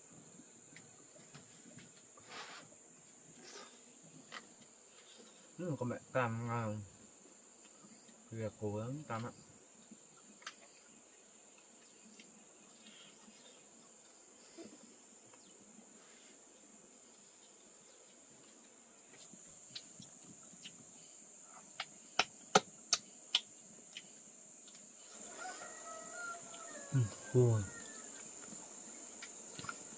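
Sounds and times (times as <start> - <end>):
insects droning: 0.0 - 29.9.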